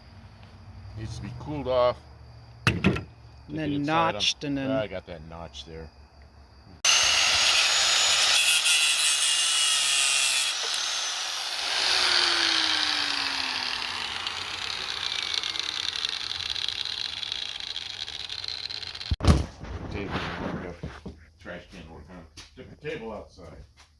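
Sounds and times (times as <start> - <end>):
power tool grinding whine: 6.8 - 19.2.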